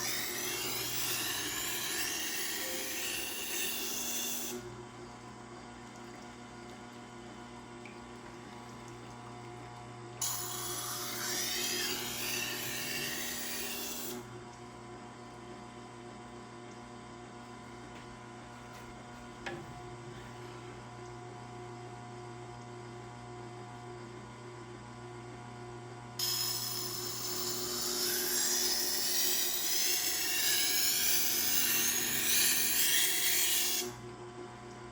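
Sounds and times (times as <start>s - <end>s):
knife grinding on wet grindstone: 0.0s - 4.6s
sharpener motor humming: 0.0s - 4.7s, 10.2s - 14.3s, 26.2s - 34.0s.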